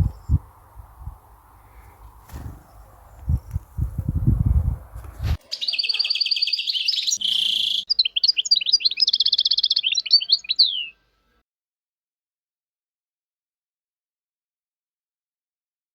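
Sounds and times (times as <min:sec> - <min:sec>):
songbird singing trilled song: 0:00.0 - 0:03.6, 0:05.4 - 0:11.0.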